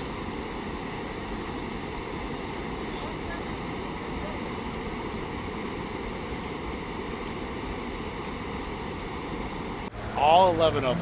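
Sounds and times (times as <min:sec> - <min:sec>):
floodwater roaring through spillway: 0:00.0 - 0:11.0.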